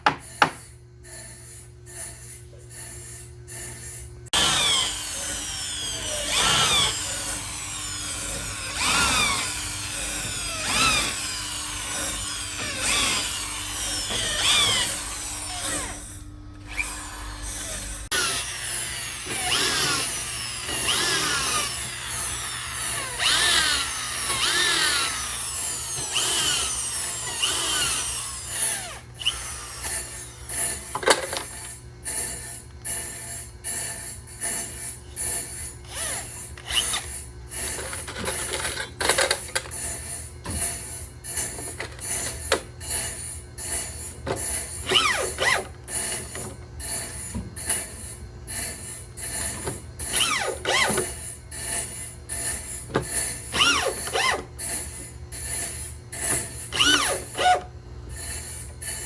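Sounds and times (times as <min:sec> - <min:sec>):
power drill running: 0:01.1 - 0:47.9, 0:48.5 - 0:59.0.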